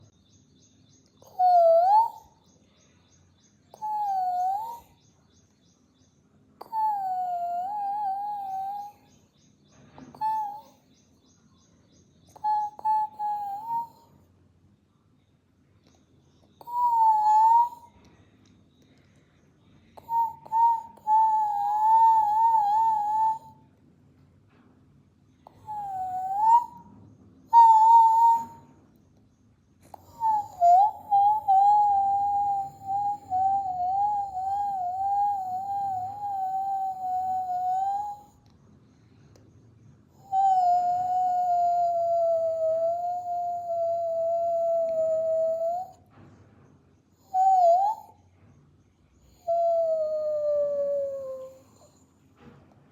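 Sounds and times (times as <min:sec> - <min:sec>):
dog hooting whine: 0:01.2 - 0:02.3, 0:06.6 - 0:09.1, 0:10.0 - 0:10.8, 0:16.6 - 0:17.9, 0:20.0 - 0:23.6, 0:25.5 - 0:28.8, 0:29.8 - 0:38.4, 0:40.2 - 0:46.3, 0:47.2 - 0:48.2, 0:49.3 - 0:52.5.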